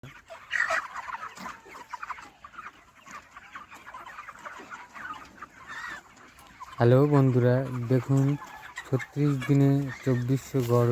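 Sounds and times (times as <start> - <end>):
flock of chickens clucking and cheeping: 0.0 - 10.9.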